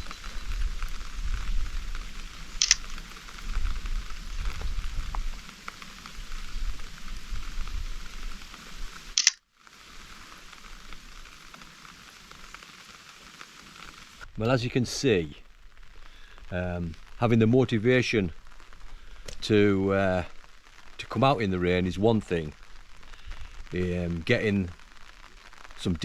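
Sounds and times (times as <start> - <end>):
wind buffeting microphone: 0.0 - 9.0
rain pattering: 0.0 - 26.0
sharp clicks: 2.6 - 3.0, 9.2 - 9.4.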